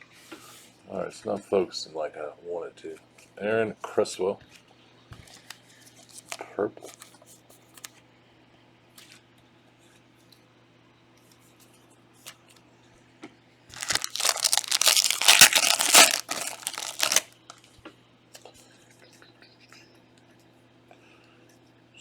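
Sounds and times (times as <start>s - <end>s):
wrapper tearing and crinkling: 13.8s - 17.6s.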